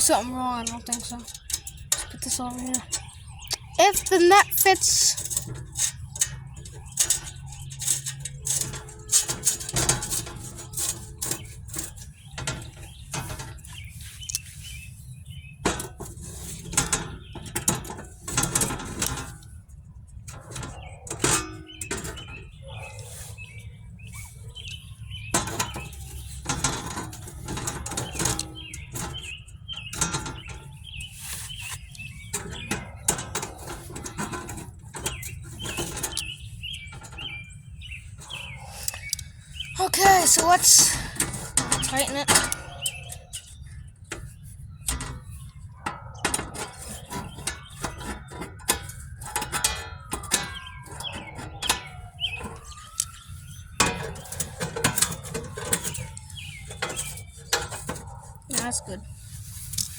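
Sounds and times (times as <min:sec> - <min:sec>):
birds chirping: 0:00.0 - 0:08.9, 0:11.2 - 0:15.7, 0:19.8 - 0:59.2.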